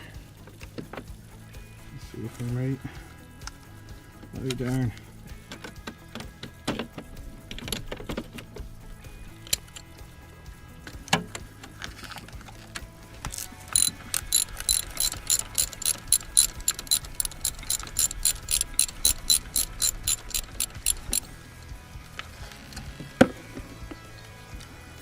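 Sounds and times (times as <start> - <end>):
ratchet wrench clicking: 3.4 - 10.0, 10.8 - 21.4.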